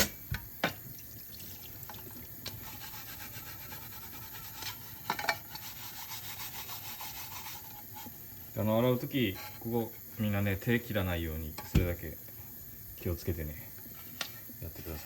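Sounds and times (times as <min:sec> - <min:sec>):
soap pad scrubbing metal tin: 0:02.5 - 0:08.1.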